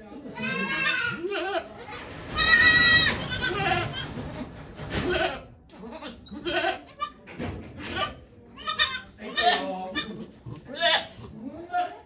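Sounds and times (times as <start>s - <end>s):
goats bleating: 0.4s - 4.0s, 8.0s - 11.7s.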